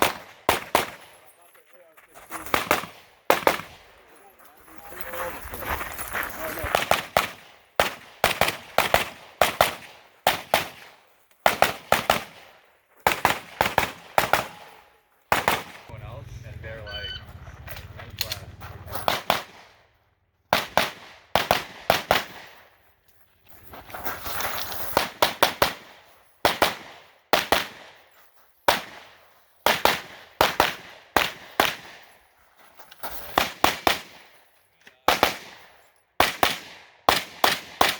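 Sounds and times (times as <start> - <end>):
gunshots in quick pairs: 0.0 - 1.1, 2.4 - 3.8, 6.7 - 17.2, 17.8 - 19.9, 20.5 - 22.6, 25.0 - 27.9, 29.7 - 32.0, 35.1 - 37.9.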